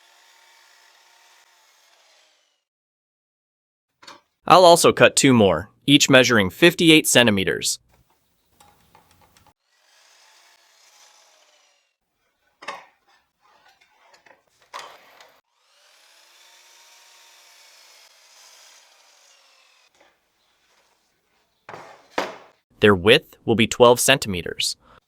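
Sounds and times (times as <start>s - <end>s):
power saw cutting wood: 0.0s - 2.7s, 9.6s - 22.6s
wooden knocks: 21.7s - 22.6s.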